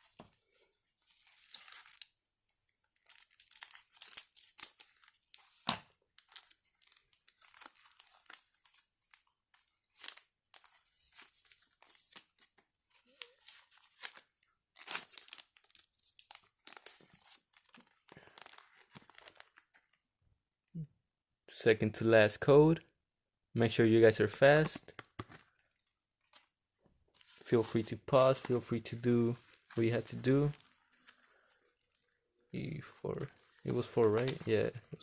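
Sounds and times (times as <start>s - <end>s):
foil wrapper tearing and crinkling: 3.0s - 5.2s, 6.2s - 9.3s, 9.9s - 19.7s.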